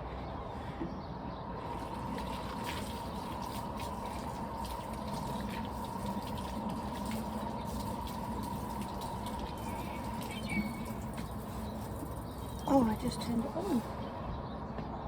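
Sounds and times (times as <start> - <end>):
water running from a tap: 1.8 - 13.2.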